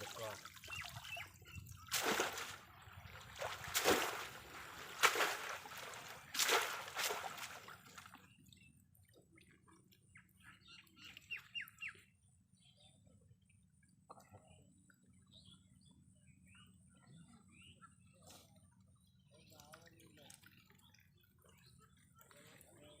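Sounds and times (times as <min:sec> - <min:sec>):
water splashing in river: 0:00.0 - 0:08.2
birds chirping: 0:00.0 - 0:13.6.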